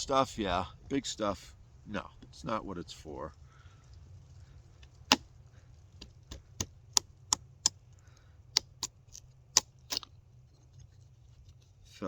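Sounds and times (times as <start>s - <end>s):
low room noise: 0.0s - 12.0s
sharp crisp clicks: 6.0s - 10.2s.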